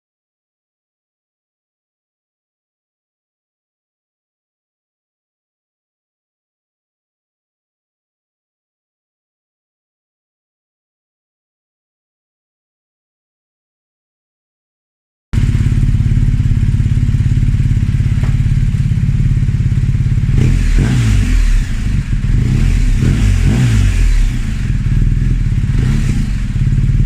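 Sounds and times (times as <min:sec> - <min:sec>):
motorcycle engine running: 0:15.4 - 0:27.0.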